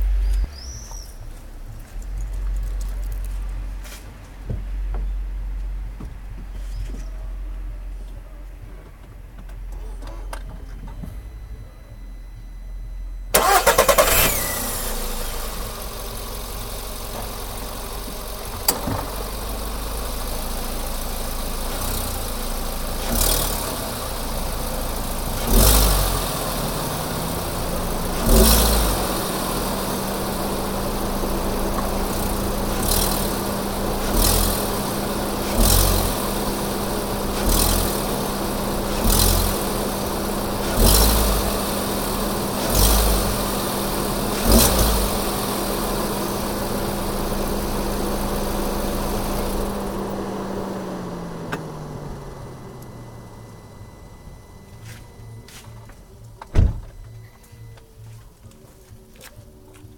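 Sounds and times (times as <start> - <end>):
car engine starting with whistle: 0.0 - 4.0, 4.7 - 58.2
car engine idling: 0.0 - 58.8
engine throttle blips: 0.0 - 59.0
rustle from engine bay: 0.2 - 4.8, 13.3 - 49.9.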